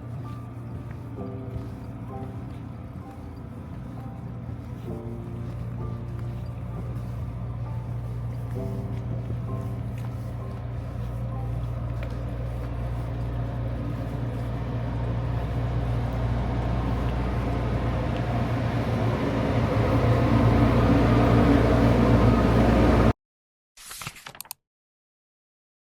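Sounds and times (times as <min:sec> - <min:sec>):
boat engine humming: 0:00.0 - 0:23.1
water noise: 0:00.0 - 0:23.1.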